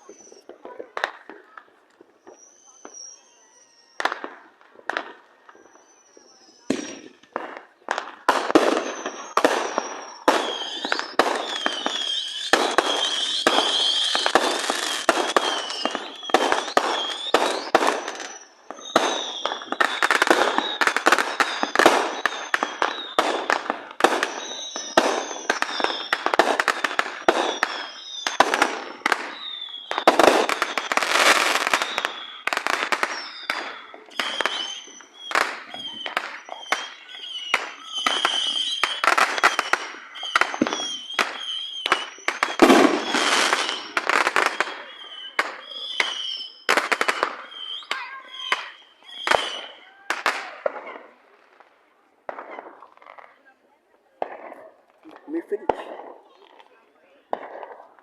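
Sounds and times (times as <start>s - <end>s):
fireworks whistling: 0.0s - 53.4s, 54.2s - 58.0s
fireworks bangs and pops: 0.0s - 58.0s
fireworks crackling: 0.0s - 58.0s.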